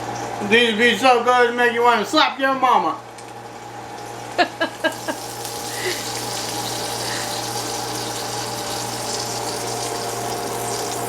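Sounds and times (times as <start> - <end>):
steam sizzling from waffle maker: 4.7 - 11.0.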